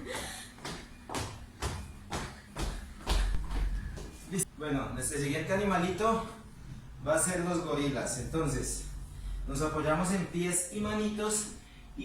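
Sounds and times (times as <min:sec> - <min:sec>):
feet thudding on floor: 0:00.1 - 0:04.2.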